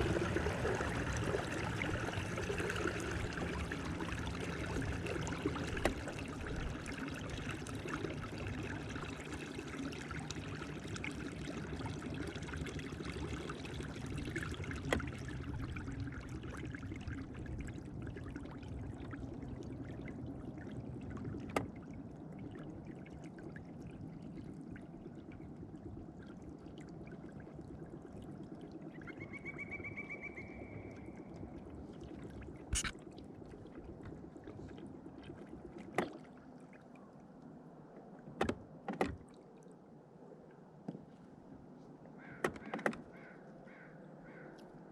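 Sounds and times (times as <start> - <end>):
water rushing along kayak hull: 0.0 - 21.8.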